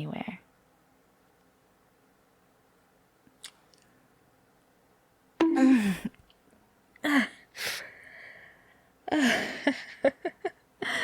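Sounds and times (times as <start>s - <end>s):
woman crying out: 5.4s - 6.1s
woman laughing breathily: 5.6s - 6.2s, 9.1s - 11.0s.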